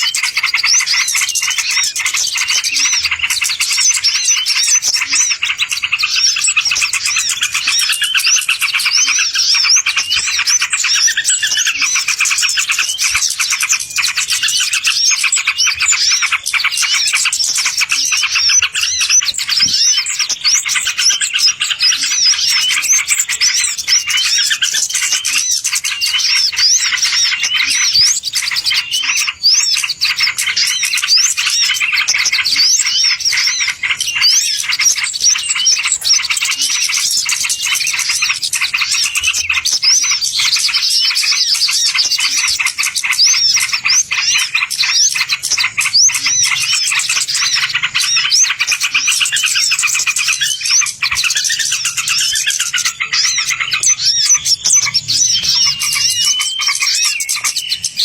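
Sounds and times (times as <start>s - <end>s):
songbirds chirping and twittering: 0.0s - 58.0s.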